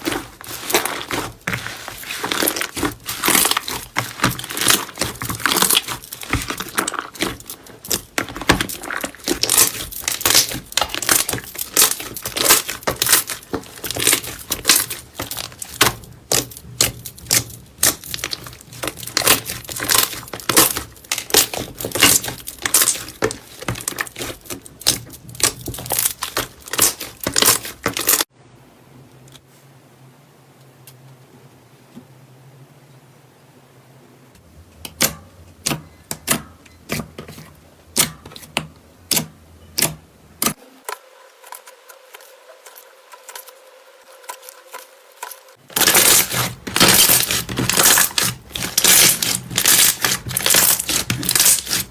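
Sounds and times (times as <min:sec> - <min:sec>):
slime crackling and popping: 0:00.0 - 0:28.3, 0:44.2 - 0:51.9.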